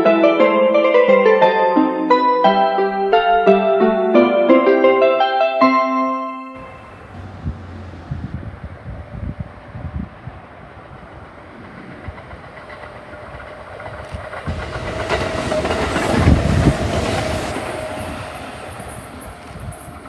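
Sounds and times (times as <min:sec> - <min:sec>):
electric train passing: 0:00.0 - 0:20.0
wheels clacking over rail joints: 0:10.4 - 0:20.0.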